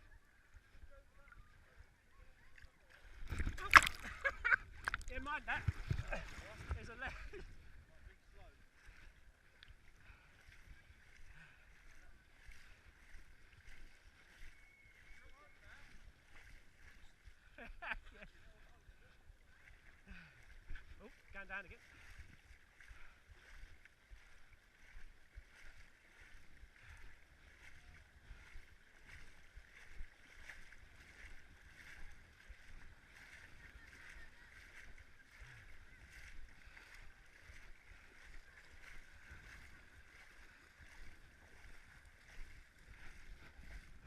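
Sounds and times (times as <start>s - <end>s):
rushing water: 0.0s - 44.0s
wind buffeting microphone: 38.2s - 44.0s.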